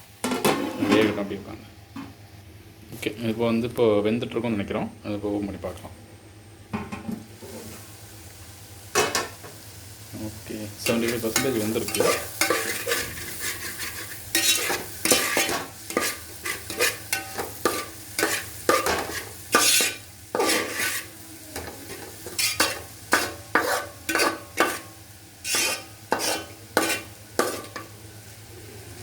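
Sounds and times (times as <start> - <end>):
spoon scraping a pan: 10.8 - 28.0.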